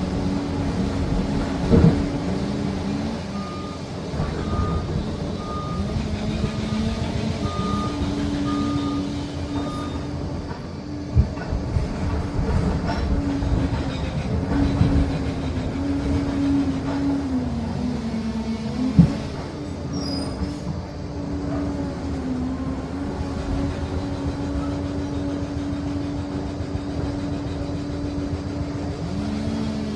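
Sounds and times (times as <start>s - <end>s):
diesel engine under load: 0.0s - 29.9s
reversing alarm beeping: 3.3s - 10.2s.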